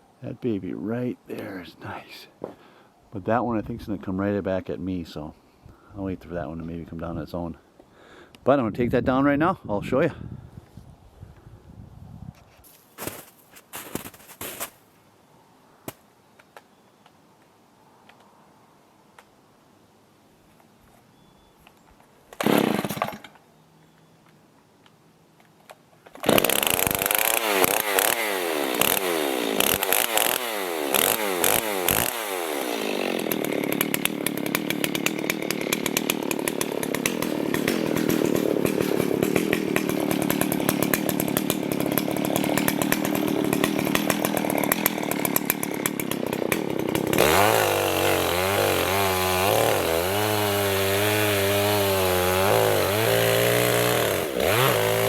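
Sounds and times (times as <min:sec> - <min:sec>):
chainsaw revving and cutting: 0:22.4 - 0:23.2, 0:26.2 - 0:55.0.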